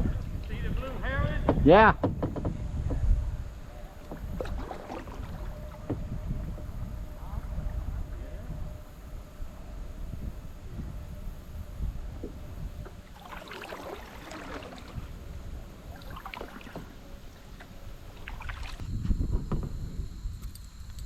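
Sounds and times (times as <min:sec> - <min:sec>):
low rumble on microphone: 0:00.0 - 0:21.0
paddle strokes splashing water: 0:03.5 - 0:08.2, 0:12.0 - 0:18.9.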